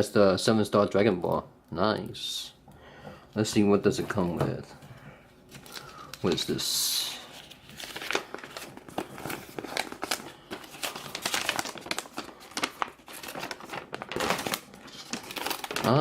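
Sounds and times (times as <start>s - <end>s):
packaging crinkling: 5.5s - 16.0s
packaging tearing: 5.5s - 16.0s.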